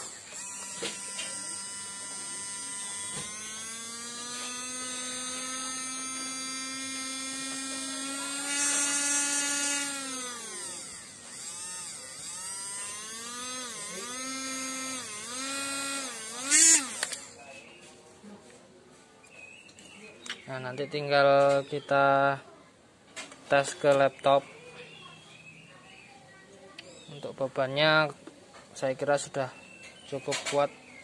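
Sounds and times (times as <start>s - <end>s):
small electric motor whining: 0.0s - 17.7s.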